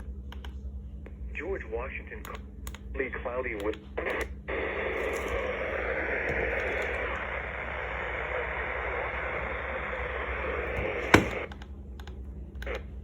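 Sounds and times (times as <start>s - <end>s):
faint low hum: 0.0s - 13.0s
radio static hiss: 3.0s - 11.5s.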